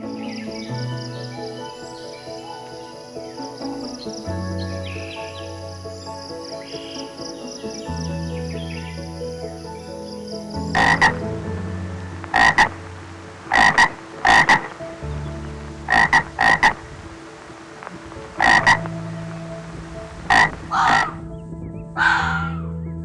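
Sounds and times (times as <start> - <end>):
animal croaking: 22.0 - 22.6.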